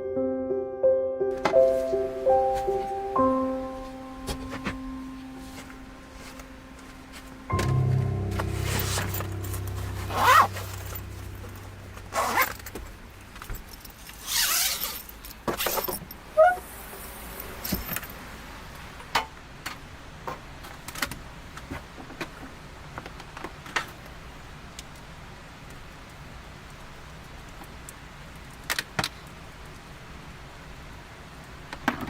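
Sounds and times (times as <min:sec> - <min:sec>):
background music: 0:00.0 - 0:13.4.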